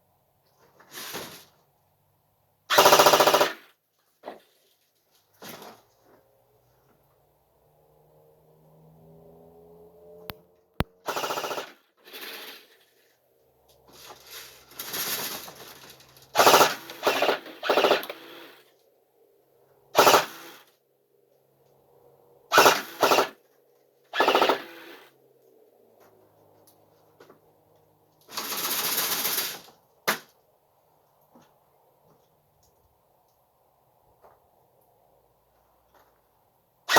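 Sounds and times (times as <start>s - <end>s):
airsoft machine gun bursts: 2.7s - 3.6s, 11.0s - 12.8s, 16.3s - 18.6s, 20.0s - 20.7s, 22.5s - 23.4s, 24.2s - 25.1s, 28.3s - 29.7s.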